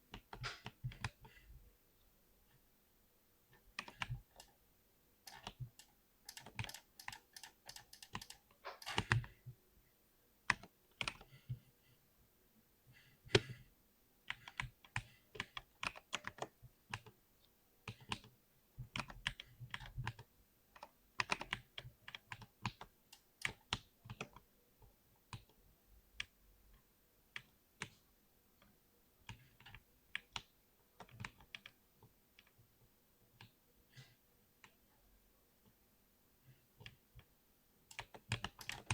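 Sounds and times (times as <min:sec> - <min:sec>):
keyboard typing: 0:05.3 - 0:09.3, 0:22.7 - 0:24.3, 0:37.9 - 0:38.9.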